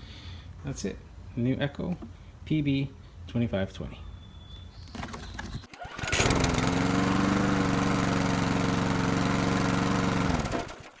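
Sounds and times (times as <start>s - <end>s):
leaf blower engine running: 5.8s - 11.0s.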